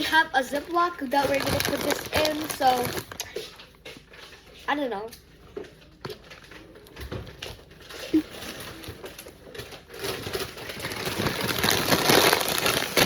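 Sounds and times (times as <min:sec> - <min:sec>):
plastic packaging crinkling: 0:00.0 - 0:03.4, 0:06.1 - 0:13.0.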